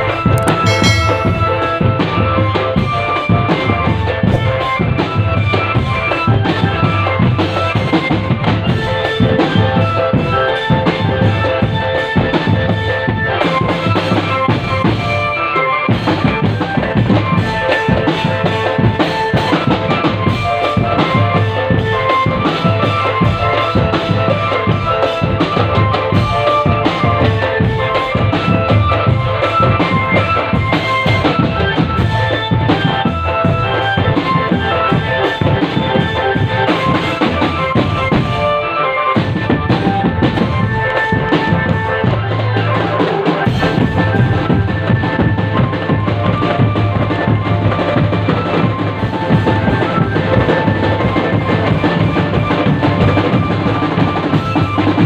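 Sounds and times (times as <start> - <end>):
melody line: 0.4 - 4.6
snare and bass drums beating: 43.4 - 55.0.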